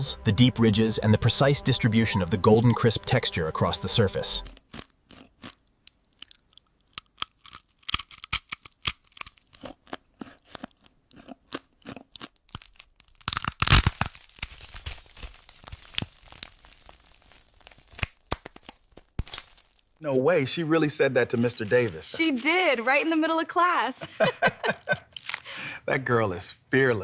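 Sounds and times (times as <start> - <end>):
potato chips crunching: 4.5 - 20.0, 21.3 - 23.2, 24.8 - 25.5.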